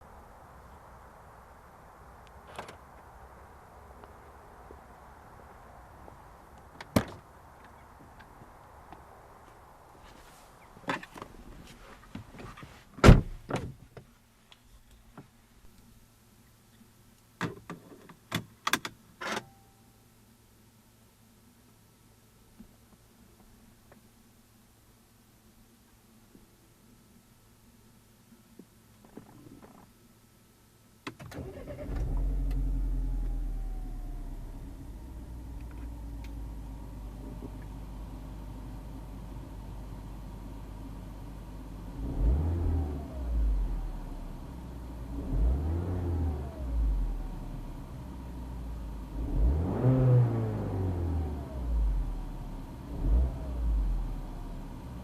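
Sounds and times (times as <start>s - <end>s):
car door shutting thump: 12.4s - 13.8s
faint low hum: 19.3s - 49.3s
ignition click: 31.0s - 33.3s
car engine starting and idling: 31.1s - 55.0s.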